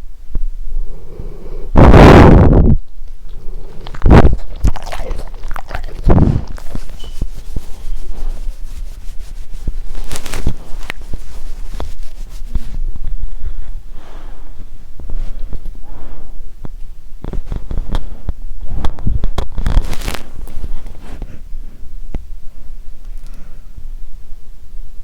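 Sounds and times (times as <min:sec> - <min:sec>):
small clicks and rustles: 0:05.9 - 0:13.2, 0:16.7 - 0:21.4.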